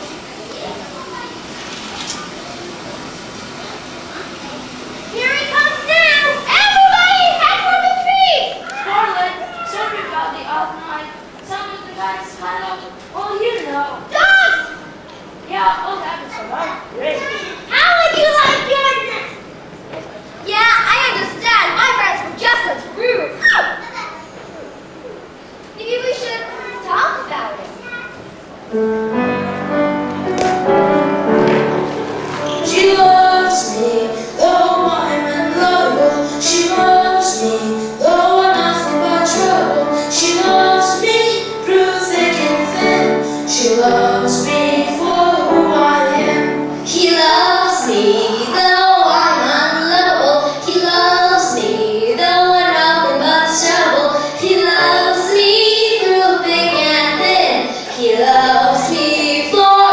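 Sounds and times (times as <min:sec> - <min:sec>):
musical accompaniment: 0:28.7 - 0:59.9
children singing: 0:31.6 - 0:59.9.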